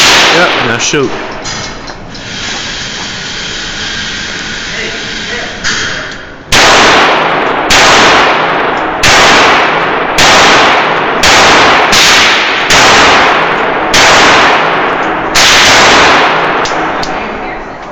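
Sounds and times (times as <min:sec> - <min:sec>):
revolver shots echoing: 0:05.6 - 0:17.1.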